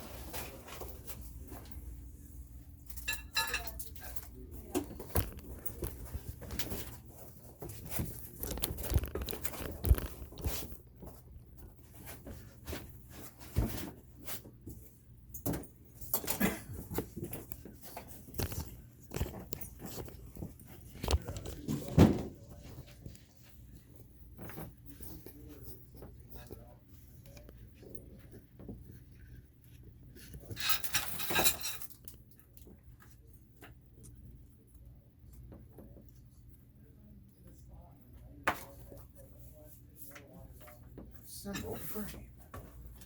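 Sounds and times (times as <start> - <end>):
parts and packaging handled: 2.9 - 14.8, 15.4 - 23.8.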